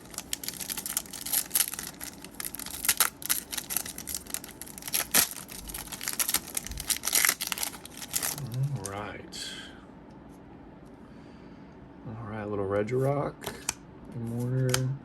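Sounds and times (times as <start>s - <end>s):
foil pack tearing: 0.0s - 9.0s
foil wrapper crinkling: 0.0s - 9.0s.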